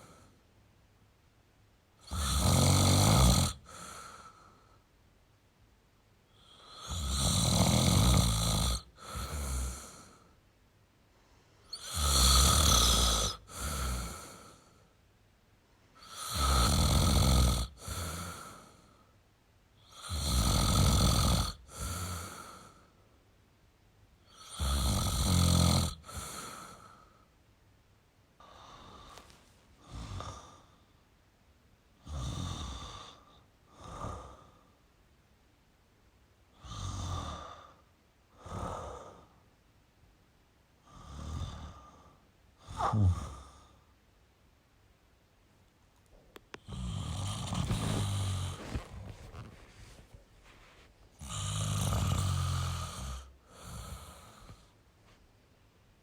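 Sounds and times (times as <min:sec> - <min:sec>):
person snoring: 0:02.0 - 0:04.4, 0:06.4 - 0:10.3, 0:11.7 - 0:14.7, 0:16.0 - 0:18.9, 0:19.8 - 0:22.8, 0:24.3 - 0:27.0, 0:29.8 - 0:30.8, 0:32.0 - 0:34.6, 0:40.9 - 0:43.8, 0:46.6 - 0:50.1, 0:51.2 - 0:54.7.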